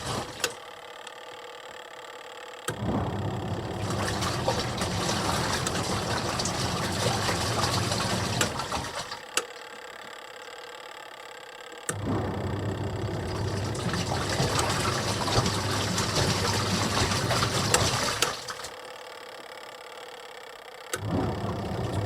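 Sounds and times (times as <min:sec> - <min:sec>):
washing machine hum: 0:00.0 - 0:00.8, 0:02.7 - 0:10.2, 0:11.8 - 0:18.8, 0:20.9 - 0:22.0
washing machine click: 0:02.7 - 0:09.5, 0:11.9 - 0:18.7
rushing water: 0:03.5 - 0:09.2, 0:13.2 - 0:18.7.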